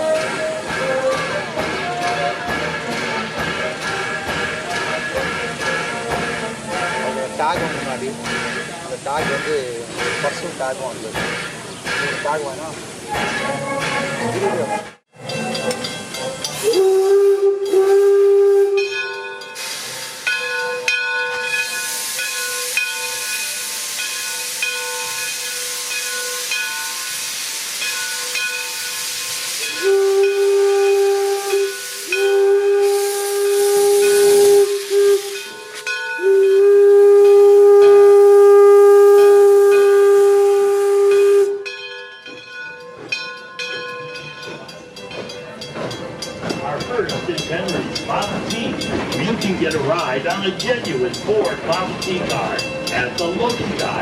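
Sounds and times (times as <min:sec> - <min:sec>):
steam locomotive whistle blasts: 0:00.0 - 0:10.7, 0:15.8 - 0:42.0
steady steam hiss: 0:00.0 - 0:41.8, 0:44.2 - 0:54.0.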